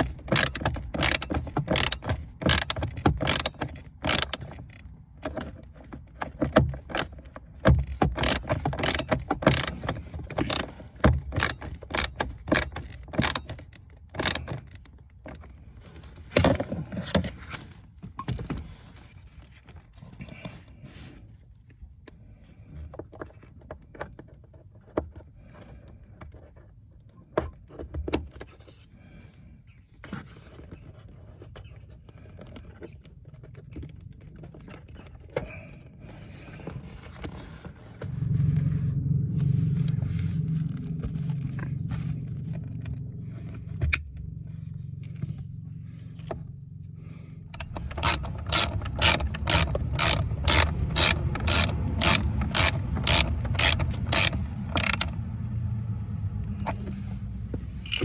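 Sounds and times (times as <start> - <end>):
plastic parts clicking and scraping: 0.0 - 38.1, 47.4 - 55.2
steady low hum: 35.9 - 58.0
fast even ratchet-like clicking: 47.5 - 55.1.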